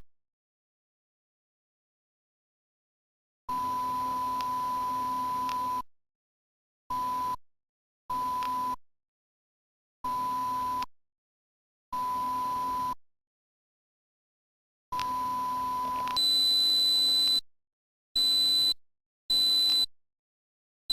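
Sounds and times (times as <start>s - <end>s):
high-pitched beep tone: 15.0s - 17.4s, 18.2s - 19.9s.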